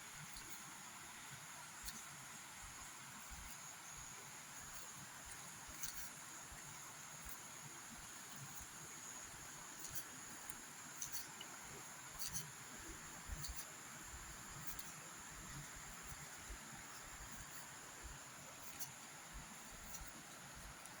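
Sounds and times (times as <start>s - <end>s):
insects chirring: 0.2s - 21.0s.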